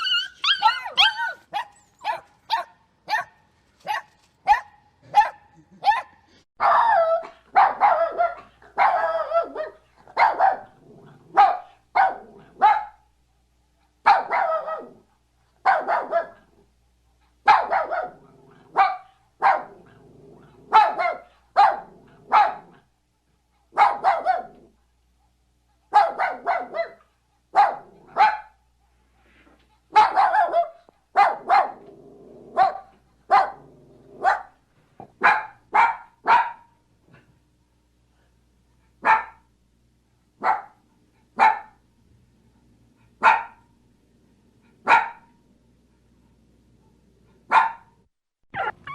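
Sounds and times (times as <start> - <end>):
puppy barking: 0.0 - 13.0, 14.0 - 15.0, 15.6 - 16.5, 17.4 - 19.8, 20.7 - 22.8, 23.7 - 24.6, 25.9 - 27.0, 27.6 - 28.6, 29.9 - 31.9, 32.5 - 33.6, 34.2 - 36.7, 39.0 - 39.5, 40.4 - 40.8, 41.4 - 41.8, 43.2 - 43.6, 44.8 - 45.3, 47.5 - 48.9.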